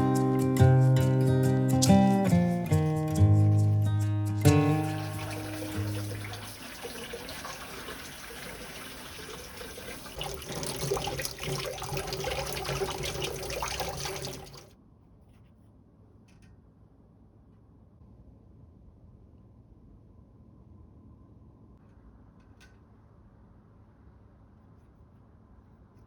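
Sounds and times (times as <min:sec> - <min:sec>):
tap water running into sink: 0:04.4 - 0:14.7.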